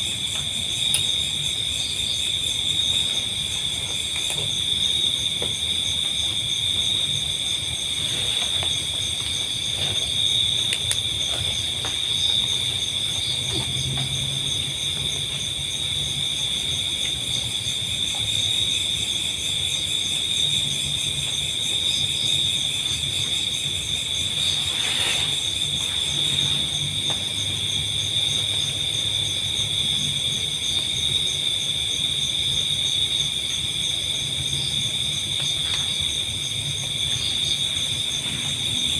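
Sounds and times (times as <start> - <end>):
crickets trilling: 0.0 - 38.9.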